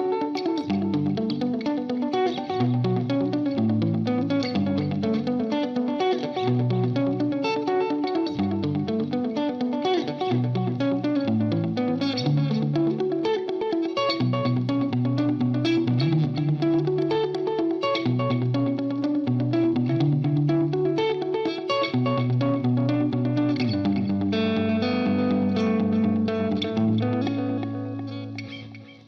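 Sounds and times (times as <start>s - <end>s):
electric guitar riff: 0.0s - 29.0s.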